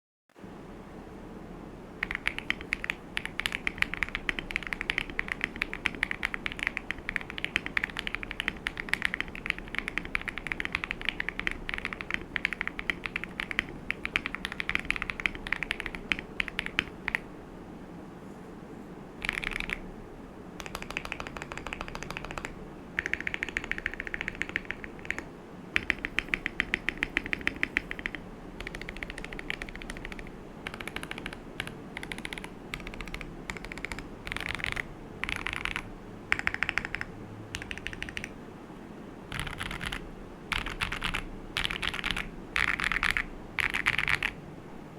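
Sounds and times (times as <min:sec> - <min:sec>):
fast typing on mechanical keyboard: 0:02.0 - 0:17.3, 0:19.2 - 0:19.8, 0:20.6 - 0:38.4, 0:39.3 - 0:44.4.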